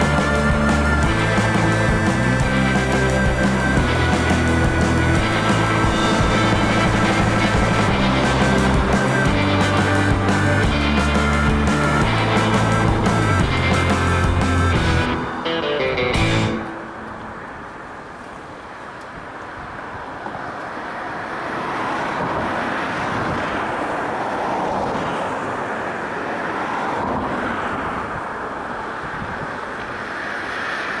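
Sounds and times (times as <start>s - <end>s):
wind buffeting microphone: 0.0s - 15.1s, 21.6s - 31.0s.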